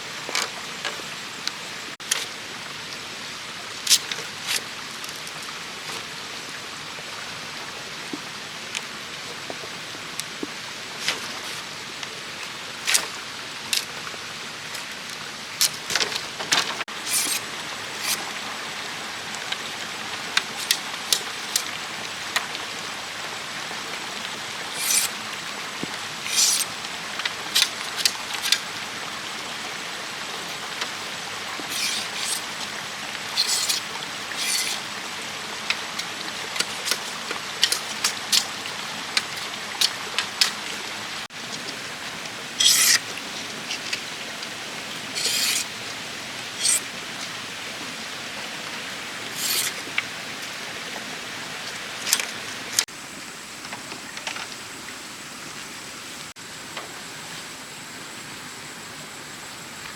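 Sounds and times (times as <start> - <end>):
steady hiss: 0.0 - 59.9.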